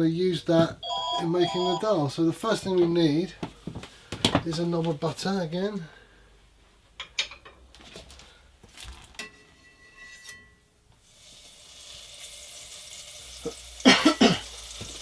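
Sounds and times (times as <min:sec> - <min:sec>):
metallic ring: 0:09.2 - 0:10.7
butter sizzling in a pan: 0:11.0 - 0:15.0.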